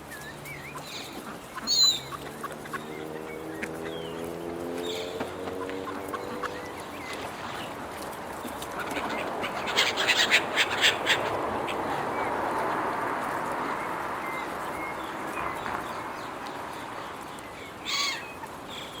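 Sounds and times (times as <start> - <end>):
seagulls squawking: 0.2 - 7.9, 8.5 - 12.9, 17.6 - 19.0.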